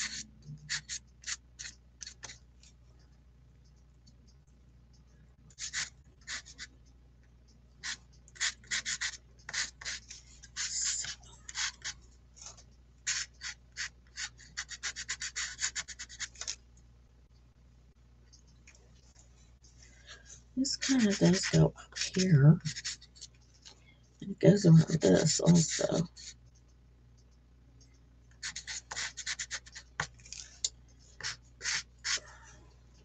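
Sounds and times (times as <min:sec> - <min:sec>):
pastel scratching on paper: 0:00.0 - 0:02.4, 0:05.6 - 0:06.7, 0:07.8 - 0:12.0, 0:13.1 - 0:16.6, 0:20.7 - 0:23.3, 0:24.8 - 0:26.4, 0:28.4 - 0:30.1, 0:31.2 - 0:32.2.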